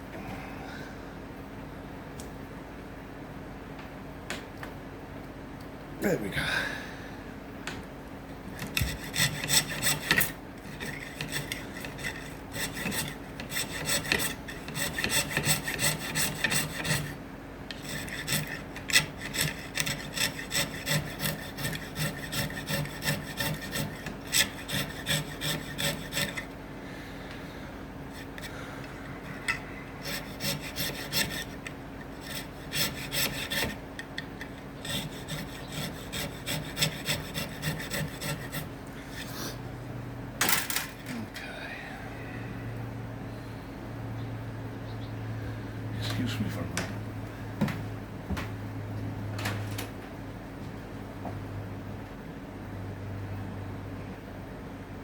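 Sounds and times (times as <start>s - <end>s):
hand filing wood: 8.6s - 26.5s, 28.1s - 28.6s, 30.0s - 33.8s, 34.8s - 39.5s.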